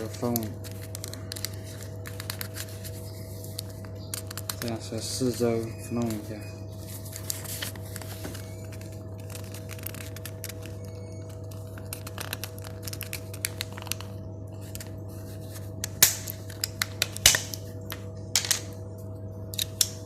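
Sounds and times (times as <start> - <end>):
low hum: 0.0 - 20.0.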